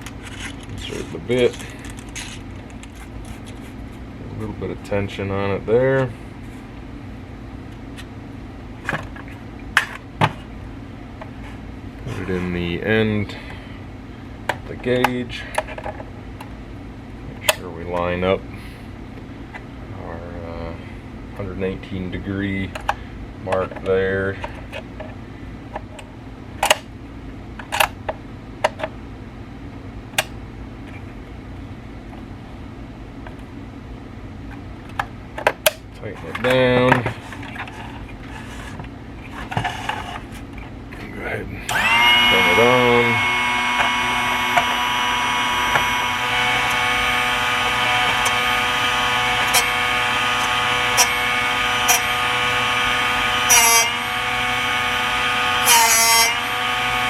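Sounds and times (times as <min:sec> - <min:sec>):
steady low hum: 0:00.0 - 0:57.0
grinder motor whine: 0:41.7 - 0:57.0
grinding rasps: 0:41.7 - 0:57.0.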